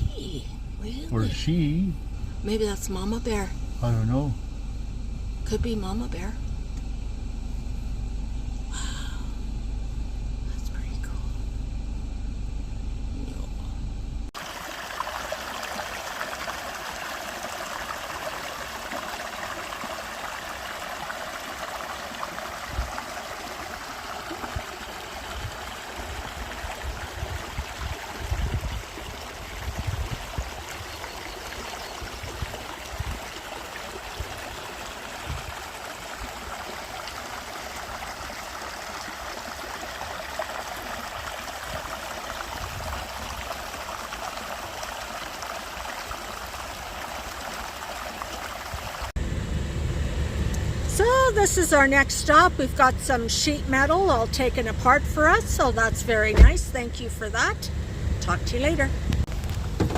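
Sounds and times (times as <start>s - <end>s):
low vehicle rumble: 0.0s - 14.4s, 49.0s - 59.9s.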